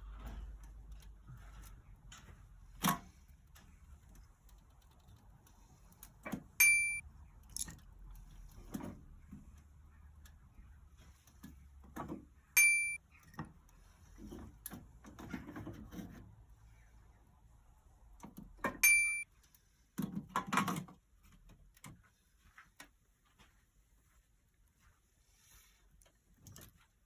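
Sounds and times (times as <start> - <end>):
short electronic beeps: 6.6 - 7.0, 12.6 - 13.0, 18.8 - 19.2.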